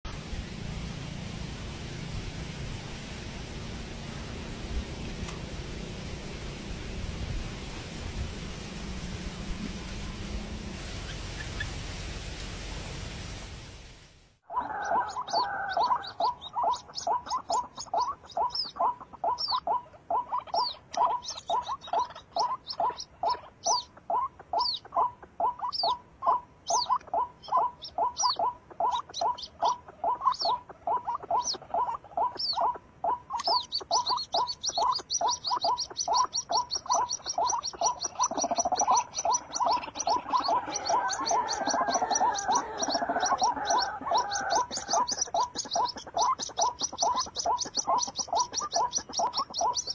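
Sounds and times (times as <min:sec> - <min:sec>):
low repeating animal call: 0:14.5 - 0:49.9
high bird chirps: 0:14.8 - 0:49.9
rough loud animal call: 0:38.0 - 0:45.6.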